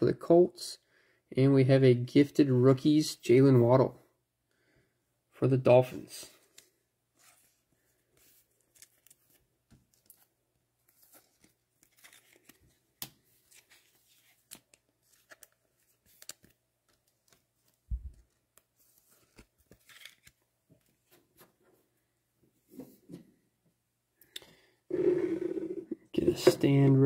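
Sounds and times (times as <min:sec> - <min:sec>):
cards clicking and rustling: 0:08.2 - 0:21.2.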